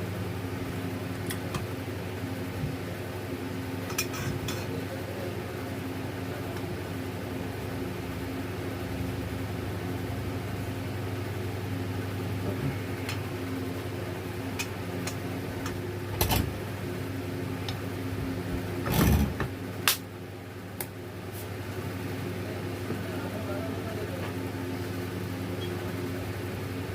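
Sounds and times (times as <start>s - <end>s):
low mechanical hum: 0.0s - 26.9s.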